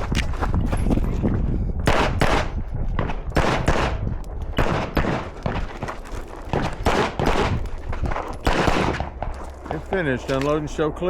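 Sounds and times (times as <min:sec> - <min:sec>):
gunshots in quick groups: 0:01.8 - 0:05.8, 0:06.5 - 0:07.6, 0:08.4 - 0:09.4.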